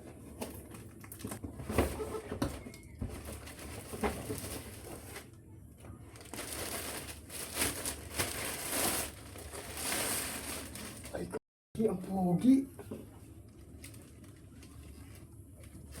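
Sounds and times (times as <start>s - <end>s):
packaging rustling: 0.9s - 5.3s, 6.1s - 11.3s.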